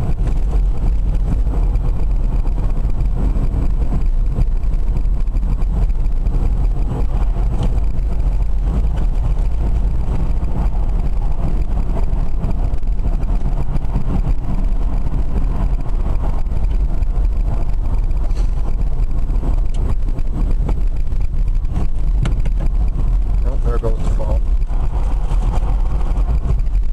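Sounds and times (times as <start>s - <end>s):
road and wind noise in car: 0.0s - 26.9s.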